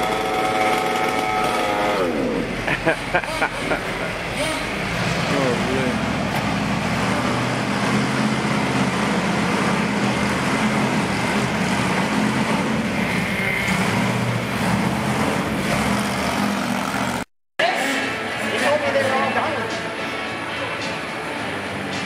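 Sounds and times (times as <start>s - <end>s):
vehicle engine running: 0.0s - 17.3s.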